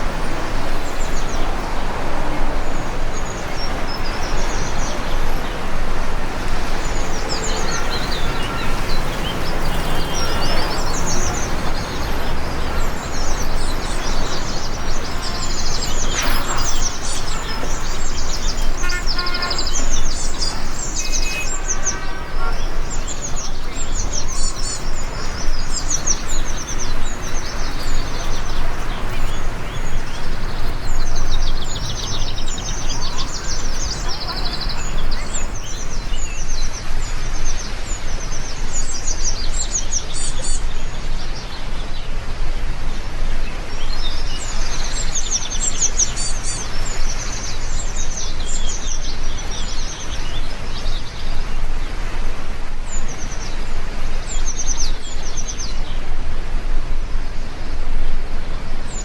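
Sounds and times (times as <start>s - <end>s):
rain hissing: 0.0s - 36.2s
small birds chirping: 0.0s - 36.3s.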